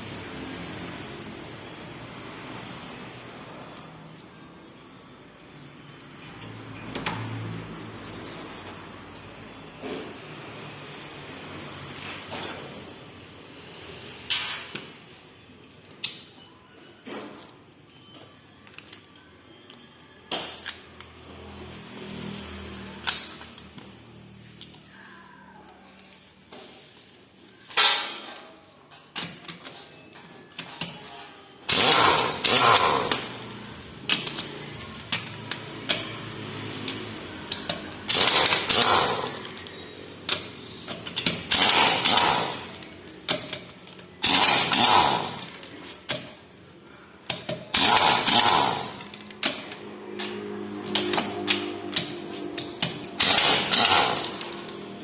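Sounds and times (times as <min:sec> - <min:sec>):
knocks of tools and parts: 0:27.7 - 0:46.5, 0:47.3 - 0:55.0
pneumatic impact wrench bursts: 0:31.7 - 0:34.4, 0:37.6 - 0:39.6, 0:40.2 - 0:43.0, 0:44.2 - 0:46.2, 0:47.6 - 0:49.8, 0:51.9 - 0:54.8.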